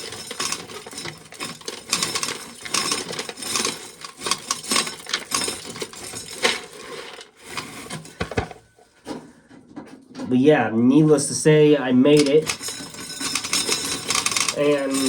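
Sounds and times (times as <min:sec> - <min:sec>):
dry corn clattering: 0:00.0 - 0:08.5, 0:12.1 - 0:15.0.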